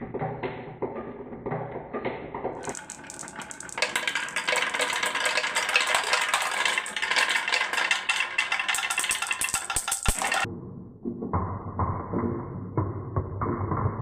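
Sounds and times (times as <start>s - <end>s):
marbles clattering down a run: 2.6s - 10.5s.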